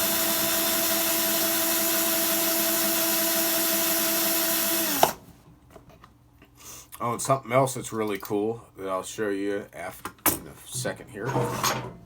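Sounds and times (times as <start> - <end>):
electric drill spinning cutter: 0.0 - 5.2
drill stopping click: 4.4 - 5.2.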